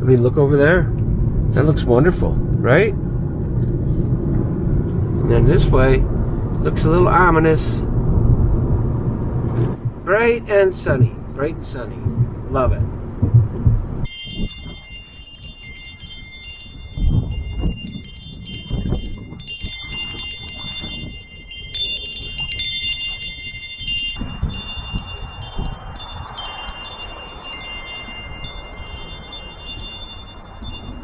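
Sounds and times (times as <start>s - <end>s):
metal wind chimes ringing: 5.0s - 8.0s, 10.1s - 12.8s, 14.0s - 31.0s.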